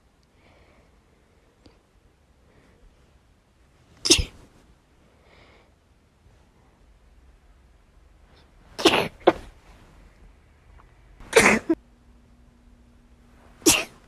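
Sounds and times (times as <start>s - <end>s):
woman sneezing: 4.1s - 4.4s, 8.8s - 9.5s, 11.3s - 11.8s, 13.7s - 14.0s.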